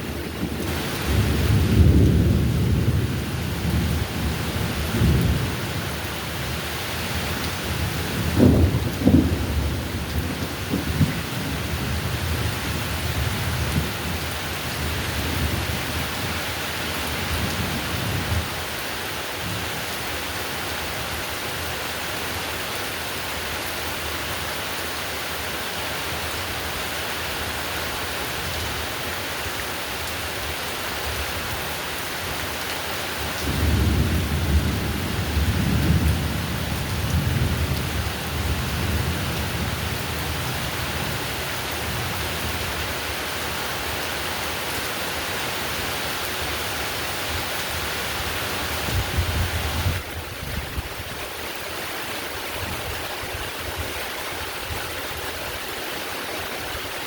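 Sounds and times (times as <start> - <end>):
thunder rumbling: 0.0 - 18.6, 33.4 - 42.6
heavy rain: 0.0 - 57.0.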